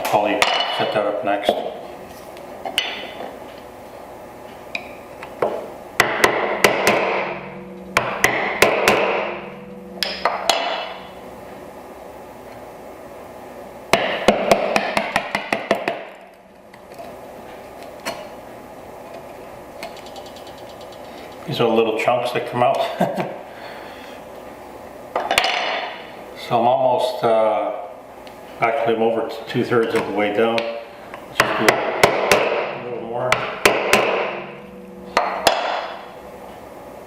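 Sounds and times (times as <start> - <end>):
mallet striking a chisel: 6.0 - 11.0, 13.9 - 16.2, 31.4 - 32.7, 33.3 - 36.0.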